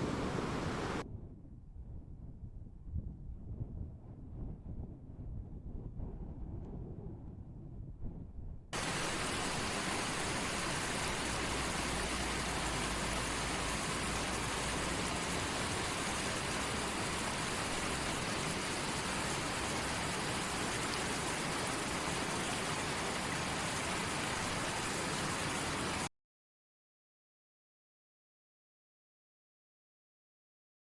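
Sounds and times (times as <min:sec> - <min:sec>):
running water hiss: 0:00.0 - 0:01.0, 0:08.8 - 0:26.1.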